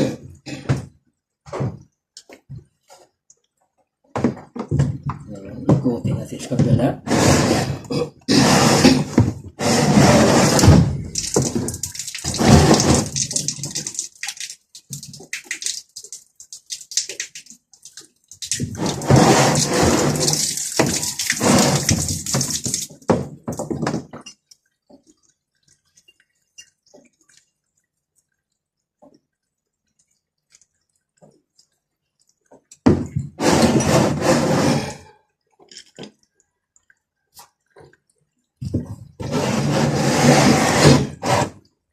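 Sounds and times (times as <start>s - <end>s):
water pouring and splashing: 8.4s - 41.9s
faint drips: 11.0s - 23.6s, 24.2s - 33.2s, 35.1s - 39.2s.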